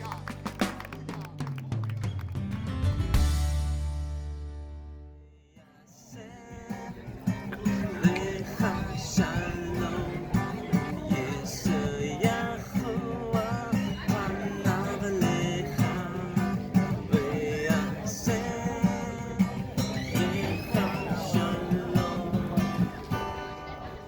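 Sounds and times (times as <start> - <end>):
acoustic guitar strumming: 2.4 - 24.0
person singing: 5.6 - 24.0.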